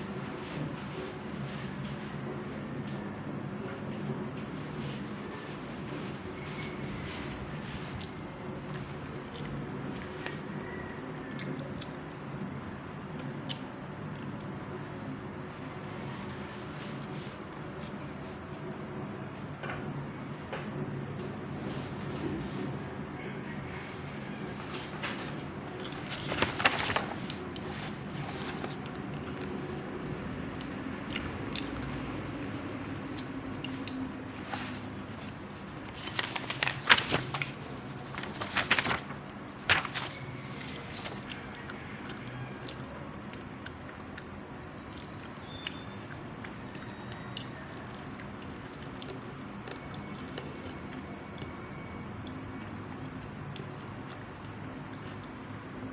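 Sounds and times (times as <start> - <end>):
biting and chewing fried chicken: 23.2 - 38.3, 40.1 - 55.9.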